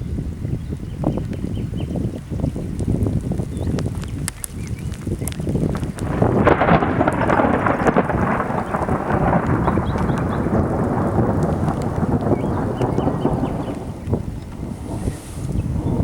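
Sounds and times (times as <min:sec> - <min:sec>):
thunder rumbling: 0:01.0 - 0:16.0.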